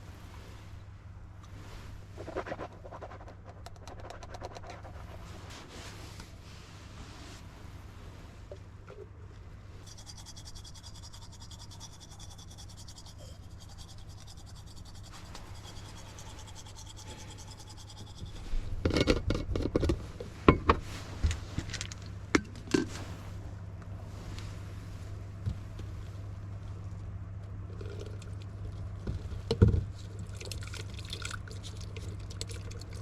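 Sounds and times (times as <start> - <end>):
low hum: 0.0 - 33.0
close-up scratching and rubbing: 1.8 - 6.2, 9.8 - 19.1.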